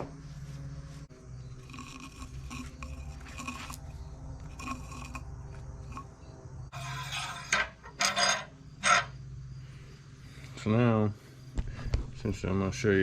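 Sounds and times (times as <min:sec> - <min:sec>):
steady low hum: 0:00.0 - 0:12.9
metal tools scraping and clinking: 0:06.7 - 0:09.2.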